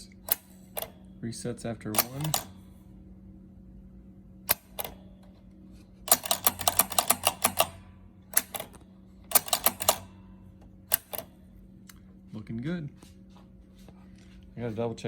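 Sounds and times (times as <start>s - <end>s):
pinball stepper unit clicking: 0.0s - 2.7s, 4.5s - 11.4s.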